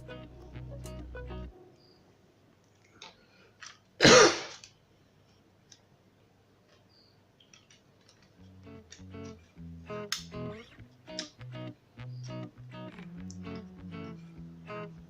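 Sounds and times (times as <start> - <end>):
person coughing: 4.0 - 4.6.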